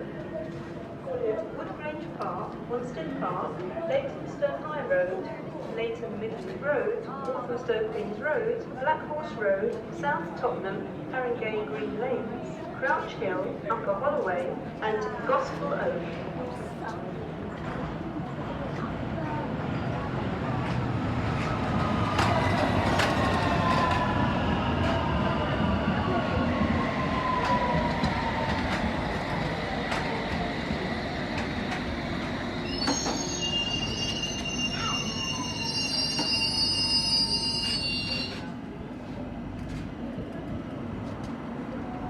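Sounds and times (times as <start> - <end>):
train rumble: 16.2 - 42.0
brakes and wheels squealing: 32.6 - 38.4.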